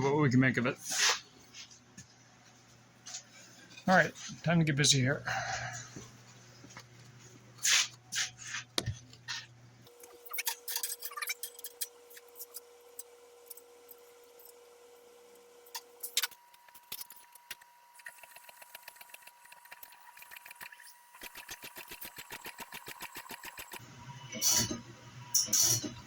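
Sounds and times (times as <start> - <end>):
faint shop hum: 0.0 - 26.0.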